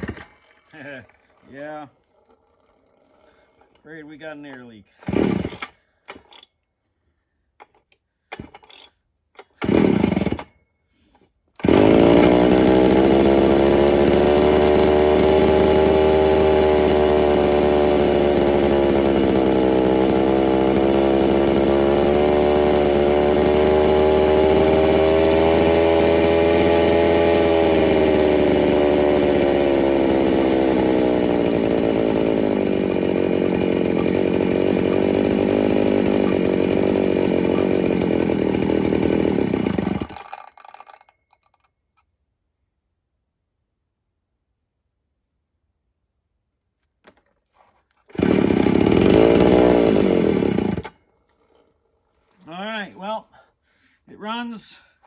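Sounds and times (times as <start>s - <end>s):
chainsaw engine running: 0.0s - 6.3s, 9.6s - 10.5s, 11.6s - 41.6s, 48.0s - 51.7s
chainsaw pull-starter: 0.0s - 6.7s, 7.5s - 42.1s, 47.0s - 53.8s.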